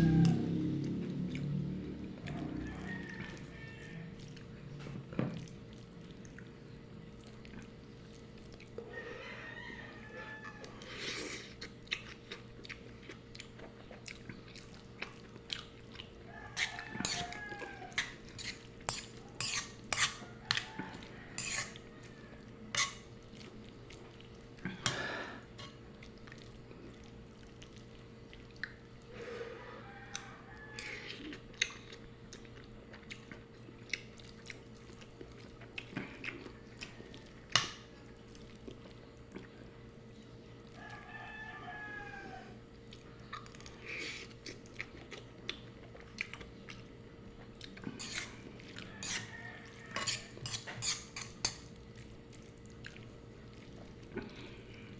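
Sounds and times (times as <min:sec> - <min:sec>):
steady low hum: 0:00.0 - 0:09.2
person chewing: 0:10.6 - 0:29.1, 0:30.1 - 0:39.8, 0:42.8 - 0:54.9
cutlery clinking on plate: 0:50.0 - 0:51.7.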